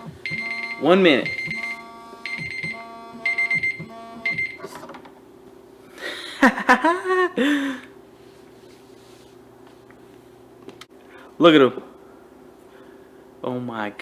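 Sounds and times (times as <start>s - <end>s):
electronic timer alarm beeping: 0.0s - 4.7s.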